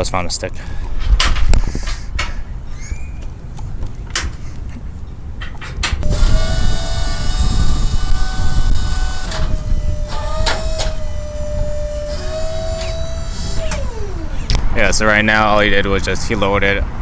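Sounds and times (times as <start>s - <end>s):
hydraulics whining: 5.7s - 17.0s
sharp clicks: 5.8s - 16.2s
truck engine running: 6.0s - 16.6s.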